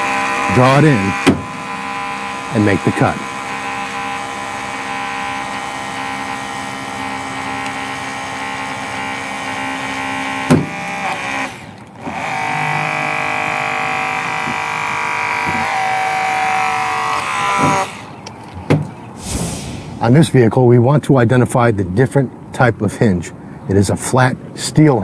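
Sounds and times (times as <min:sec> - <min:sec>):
hydraulic cutter motor running: 0:00.0 - 0:18.3.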